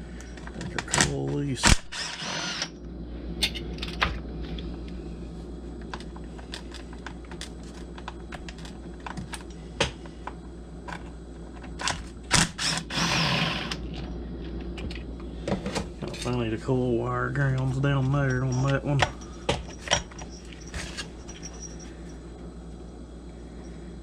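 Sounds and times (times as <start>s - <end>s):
steady low hum: 0.0s - 24.0s
rattle of parts: 5.8s - 9.5s, 18.0s - 22.2s.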